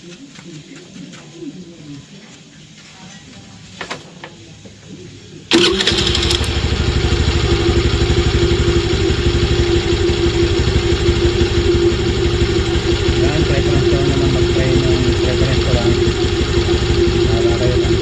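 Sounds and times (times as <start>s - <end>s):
scooter engine starting and idling: 5.5s - 18.0s.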